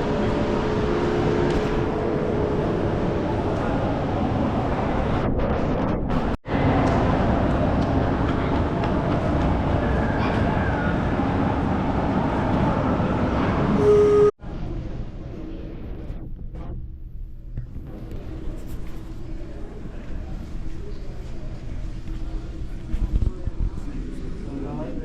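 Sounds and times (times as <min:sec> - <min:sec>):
moving vehicle running noise: 0:00.0 - 0:10.2.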